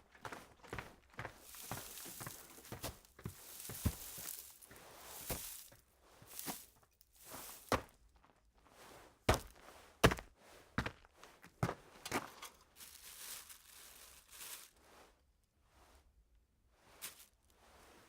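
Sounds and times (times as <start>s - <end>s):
footsteps and scuffs: 0.1s - 8.4s, 9.2s - 14.7s, 17.0s - 17.3s
rustling: 1.3s - 7.9s, 12.2s - 15.2s, 16.8s - 18.0s.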